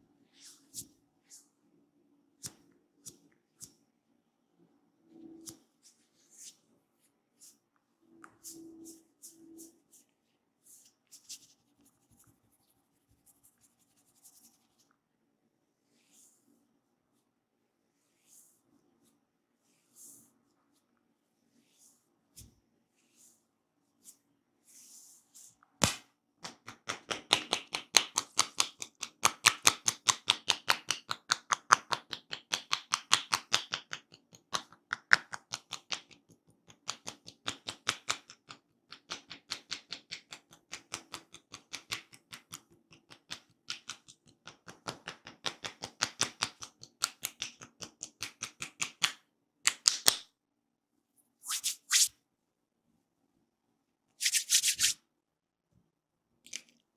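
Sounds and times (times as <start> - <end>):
hands tapping rapidly: 26.4 - 36.1, 39.0 - 49.1.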